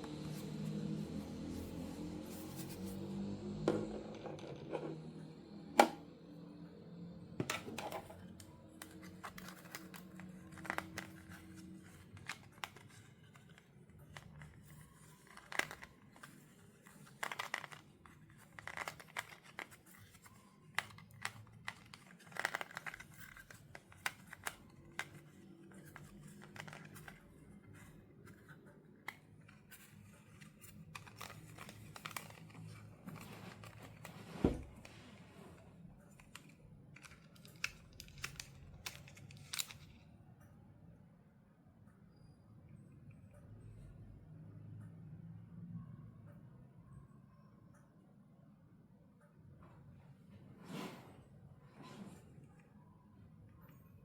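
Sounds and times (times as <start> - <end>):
plastic and cardboard crinkling: 7.6 - 40.0
packaging clicks snips and tears: 30.6 - 34.1, 36.2 - 39.9.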